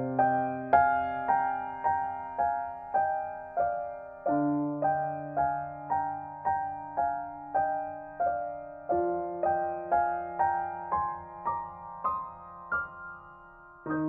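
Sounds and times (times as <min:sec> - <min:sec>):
slow gentle piano melody: 0:00.0 - 0:14.0.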